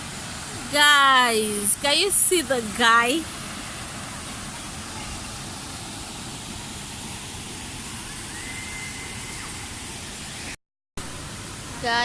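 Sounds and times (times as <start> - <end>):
waterfall rushing: 0.0 - 12.0
faint high whistle: 8.0 - 9.6.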